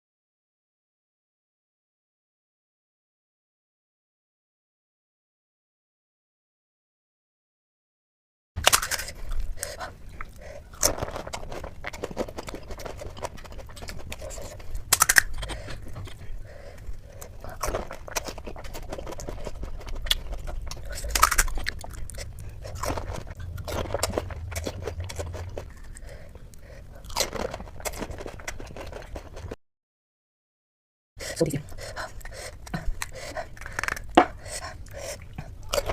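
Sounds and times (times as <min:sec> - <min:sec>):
crisp shells crunching: 0:08.6 - 0:09.9, 0:10.6 - 0:16.2, 0:17.2 - 0:26.1
wet chewing: 0:08.6 - 0:29.6, 0:31.2 - 0:35.9.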